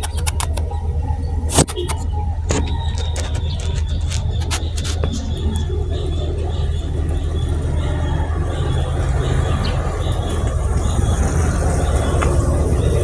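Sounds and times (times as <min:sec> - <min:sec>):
sharp clicks: 0:00.0 - 0:00.7, 0:01.5 - 0:05.9
vehicle engine rumble: 0:00.0 - 0:13.0.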